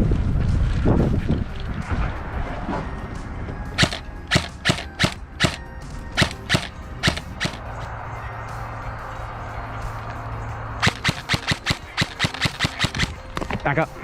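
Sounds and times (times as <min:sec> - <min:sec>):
wind buffeting microphone: 0:00.0 - 0:07.4
airsoft gun firing shots: 0:03.8 - 0:05.6, 0:06.2 - 0:07.6, 0:10.8 - 0:13.2.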